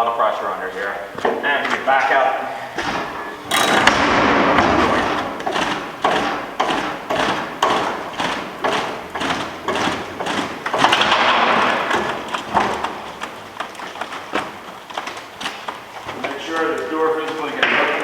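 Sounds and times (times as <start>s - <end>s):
rushing clattering noise: 0.0s - 18.0s
heavy metal door thumps: 2.7s - 13.2s.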